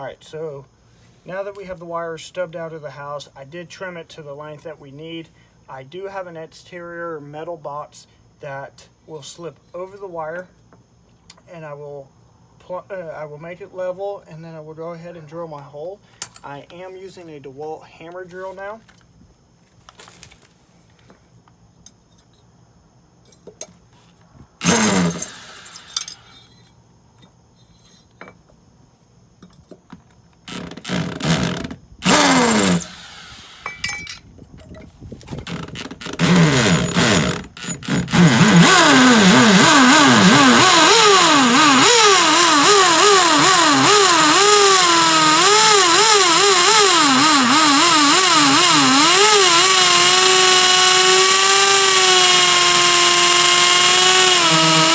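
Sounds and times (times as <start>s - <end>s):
hammer drill drilling: 24.6s - 26.0s, 30.5s - 33.8s, 35.4s - 54.9s.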